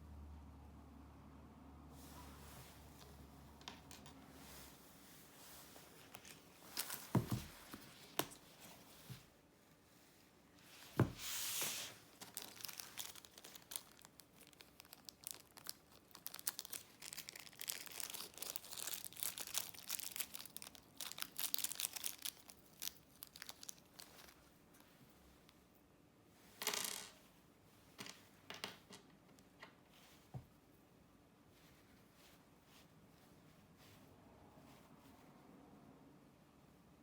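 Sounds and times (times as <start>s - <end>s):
packaging crinkling and rustling: 5.5s - 9.2s, 10.7s - 24.9s
packaging thump: 6.8s - 8.4s.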